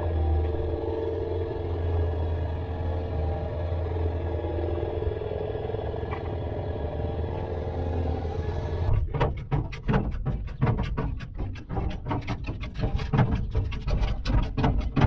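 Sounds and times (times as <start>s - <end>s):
engine humming: 0.0s - 15.0s
sharp knocks: 9.0s - 15.0s.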